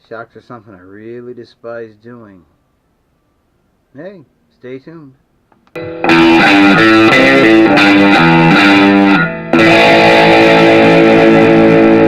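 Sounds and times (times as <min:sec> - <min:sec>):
distorted electric guitar: 0:05.8 - 0:12.0.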